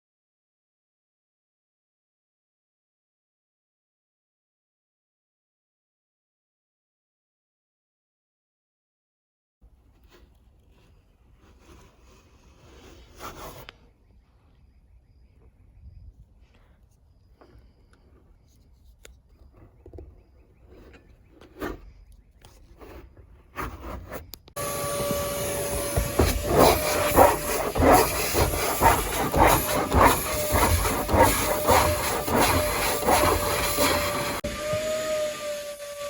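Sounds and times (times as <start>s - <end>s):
small motor whining: 24.6s - 36.0s.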